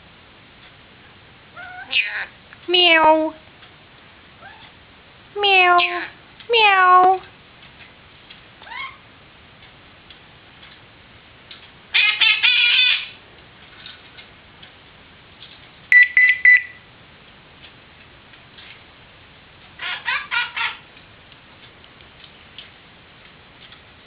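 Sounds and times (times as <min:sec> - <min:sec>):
parrot pulsing calls: 0:01.6 - 0:02.3, 0:08.6 - 0:09.0, 0:11.9 - 0:13.2, 0:19.8 - 0:20.9
parrot mimicking phone ring: 0:15.9 - 0:16.8.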